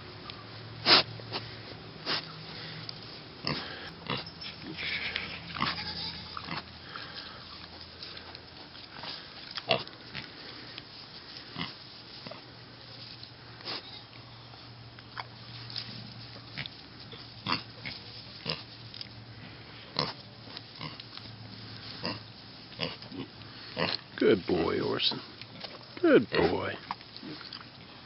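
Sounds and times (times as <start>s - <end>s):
pig snorts and grunts: 0.8s - 1.4s, 3.4s - 7.2s, 9.0s - 10.6s, 16.6s - 18.7s, 19.9s - 20.2s, 21.9s - 24.1s, 25.0s - 28.0s
piglets snuffling: 0.8s - 12.6s, 13.5s - 28.0s.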